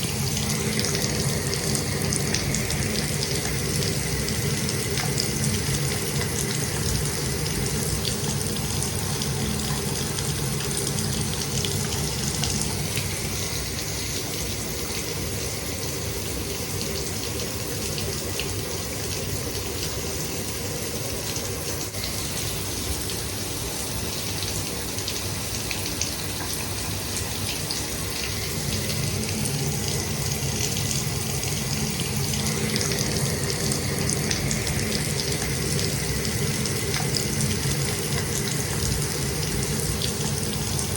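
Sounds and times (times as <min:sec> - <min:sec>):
shower water spraying: 0:00.0 - 0:16.8, 0:26.6 - 0:40.9.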